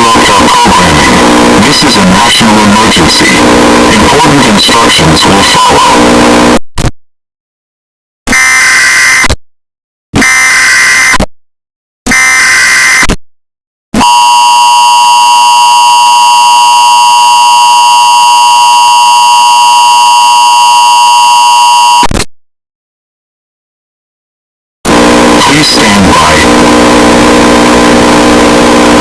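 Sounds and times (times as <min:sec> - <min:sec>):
digital data screeches: 0:05.2 - 0:06.0, 0:08.3 - 0:09.3, 0:10.2 - 0:11.2, 0:12.1 - 0:13.1.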